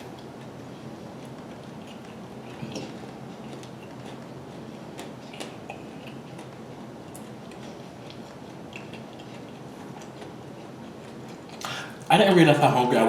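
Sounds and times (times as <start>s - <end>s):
person chewing with crunches: 0.0s - 12.1s
steady background hiss: 0.0s - 13.0s
mouth clicks: 11.6s - 12.1s.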